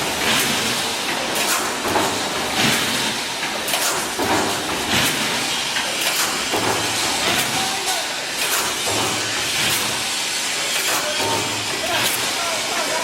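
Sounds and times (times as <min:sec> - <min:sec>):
welding machine hissing stroke: 0:04.6 - 0:13.0.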